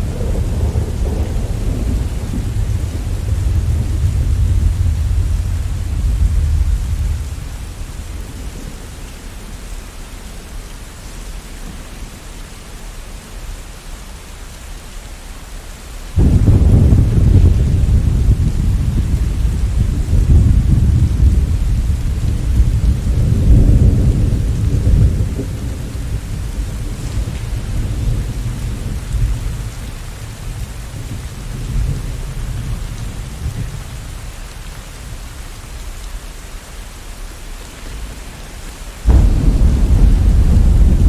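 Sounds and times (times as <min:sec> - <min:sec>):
rolling thunder: 0:00.0 - 0:09.5, 0:16.2 - 0:34.3, 0:39.0 - 0:41.0
steady rain: 0:00.0 - 0:41.0.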